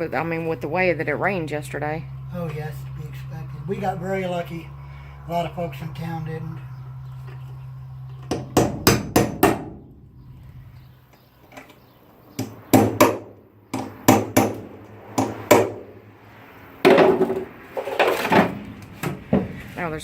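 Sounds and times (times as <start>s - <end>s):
hammer striking metal punch: 8.3s - 9.8s, 12.4s - 15.9s.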